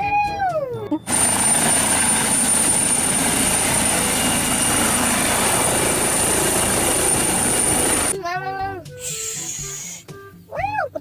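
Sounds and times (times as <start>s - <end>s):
mechanical whirring with high whine: 1.1s - 8.2s.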